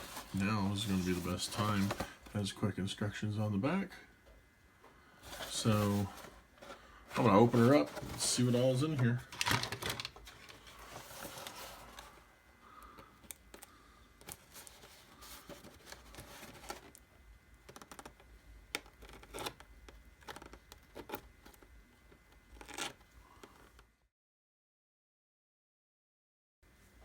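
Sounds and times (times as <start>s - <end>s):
cardboard scraping: 0.0s - 2.4s, 5.2s - 12.2s, 14.3s - 17.0s, 18.9s - 19.6s, 22.5s - 23.8s
sharp clicks and crinkles: 9.2s - 12.1s, 17.6s - 21.7s
tape tearing: 9.3s - 12.0s, 22.6s - 23.0s.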